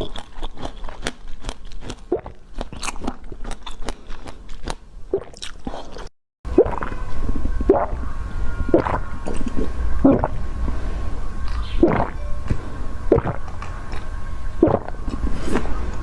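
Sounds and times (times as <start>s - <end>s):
crisp crunching and biting: 0.0s - 6.1s
wet chewing: 0.0s - 7.0s.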